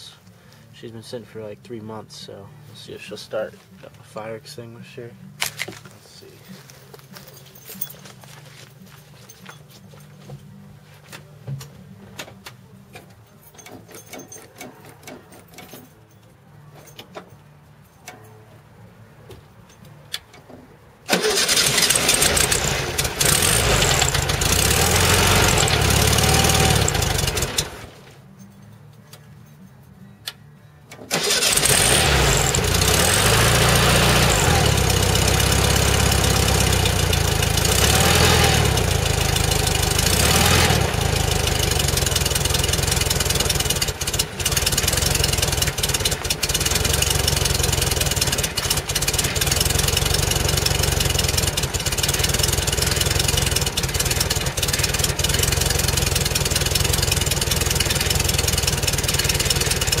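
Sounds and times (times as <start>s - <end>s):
car engine revving and idling: 21.1s - 28.0s, 31.3s - 60.0s.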